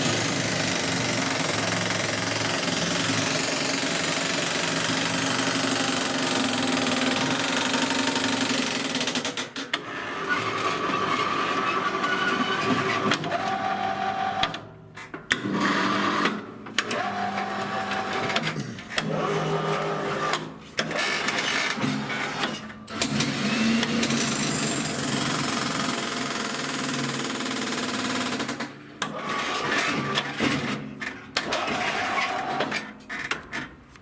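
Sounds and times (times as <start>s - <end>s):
jackhammer hammering: 0.0s - 9.7s, 22.9s - 29.2s.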